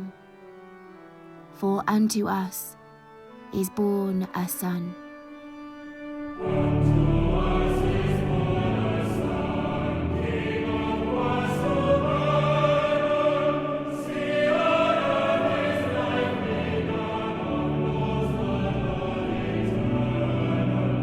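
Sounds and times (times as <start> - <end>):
choir singing a hymn: 6.2 - 21.0.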